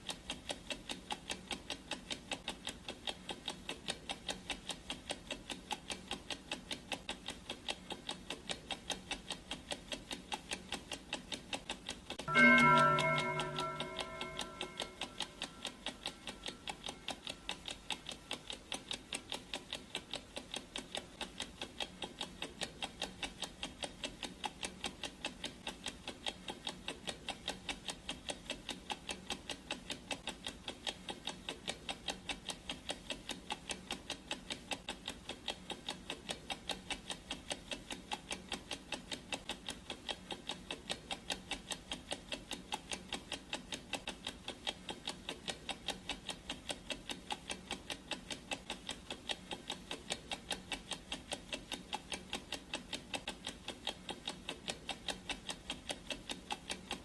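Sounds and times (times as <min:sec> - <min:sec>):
clock ticking: 0:00.0 - 0:57.0.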